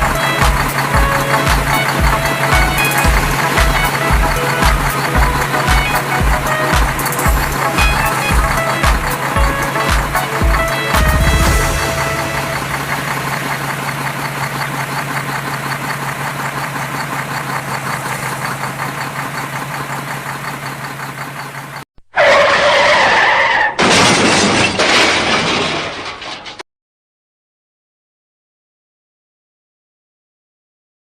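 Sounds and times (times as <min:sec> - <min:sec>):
noisy rush: 0:00.0 - 0:15.0
cartoon engine hum: 0:00.0 - 0:21.8.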